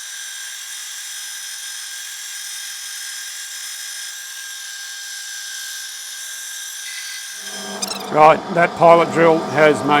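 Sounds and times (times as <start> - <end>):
lathe drilling steel whine: 6.8 - 10.0.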